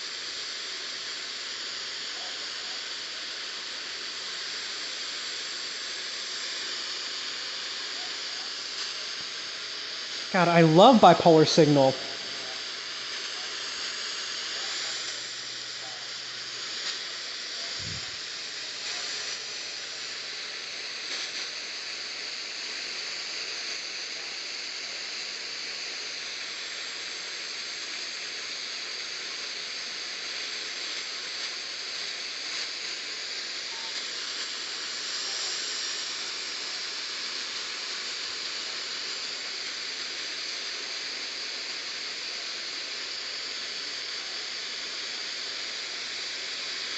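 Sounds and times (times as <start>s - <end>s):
radio static hiss: 0.0s - 46.9s.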